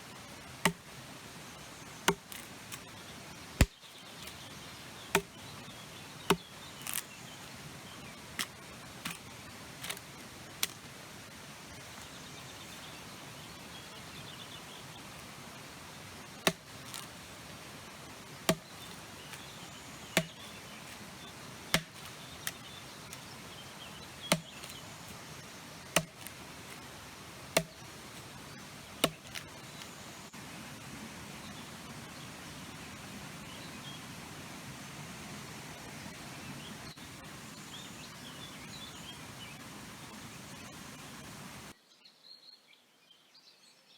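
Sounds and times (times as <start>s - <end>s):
faint outdoor background: 0.0s - 43.9s
axe chopping wood: 0.6s - 0.9s, 2.0s - 2.8s, 5.1s - 5.4s, 6.3s - 7.1s, 8.3s - 10.8s, 16.4s - 17.2s, 18.3s - 19.5s, 20.2s - 23.3s, 24.1s - 25.1s, 25.8s - 26.8s, 27.4s - 28.3s, 28.9s - 29.9s.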